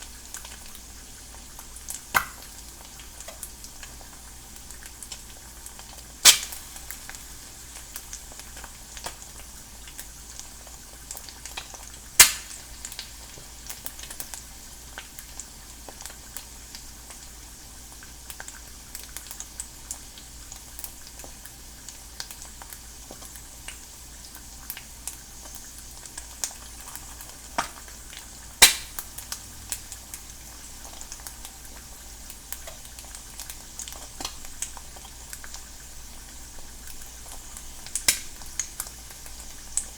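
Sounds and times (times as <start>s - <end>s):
egg sizzling in a pan: 0.0s - 39.9s
fat spitting pops: 6.2s - 6.7s.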